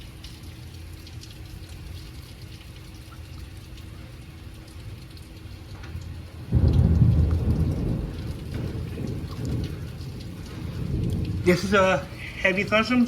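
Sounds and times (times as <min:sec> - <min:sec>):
steady rain: 0:00.0 - 0:13.0
thunder clap rumbling: 0:06.4 - 0:13.0.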